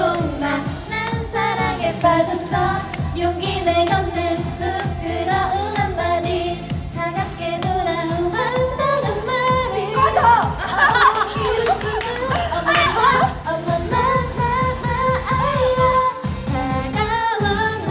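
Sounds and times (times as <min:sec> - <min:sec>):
karaoke backing track: 0:00.0 - 0:17.9
women singing pop song: 0:00.0 - 0:17.9.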